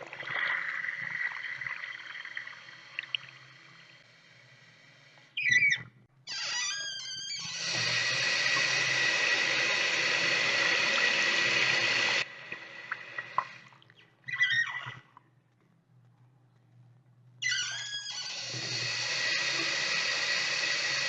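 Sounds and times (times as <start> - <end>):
faint water drips: 0.0 - 4.0, 10.4 - 15.3
faucet squealing: 5.4 - 12.3, 14.3 - 15.0, 17.4 - 21.0
faucet running: 7.4 - 13.7, 18.1 - 21.0.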